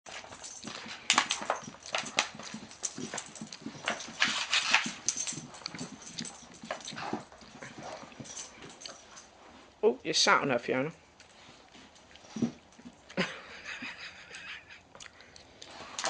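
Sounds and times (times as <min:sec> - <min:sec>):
dog paws scrabbling and thumping: 0:00.1 - 0:09.8, 0:11.2 - 0:13.4.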